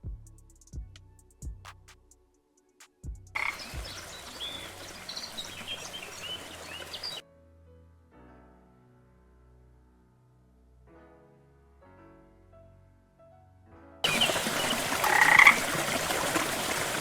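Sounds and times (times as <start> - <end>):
birds chirping: 3.4 - 7.2, 14.0 - 17.0
soft music with sustained notes: 3.4 - 15.6.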